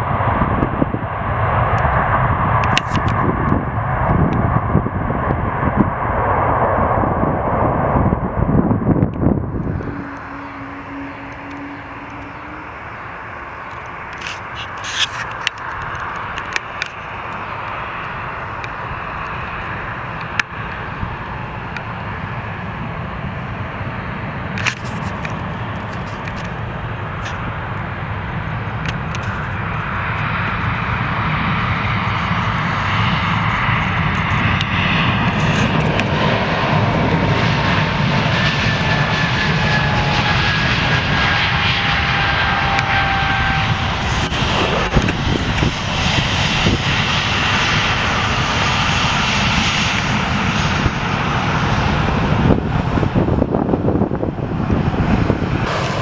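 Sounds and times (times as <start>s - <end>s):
airplane engines rumbling: 0.0s - 56.0s
faint whine sliding down in pitch: 9.1s - 20.8s, 39.7s - 47.7s.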